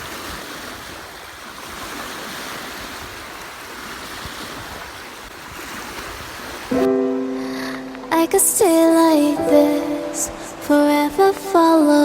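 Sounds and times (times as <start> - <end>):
wind on microphone: 0.0 - 6.9
waves washing on a shore: 0.0 - 12.0.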